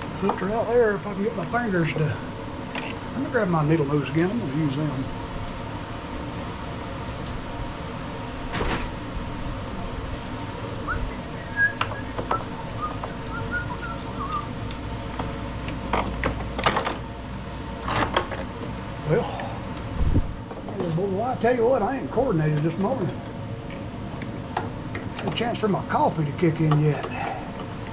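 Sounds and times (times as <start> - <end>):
steady background hum: 0.0 - 27.9.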